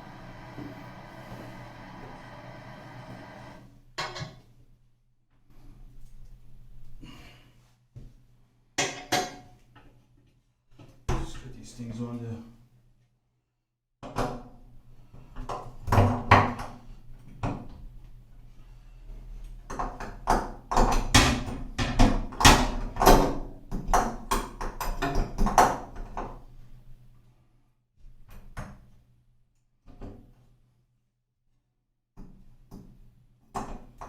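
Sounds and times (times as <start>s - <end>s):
steady low hum: 0.0s - 3.6s.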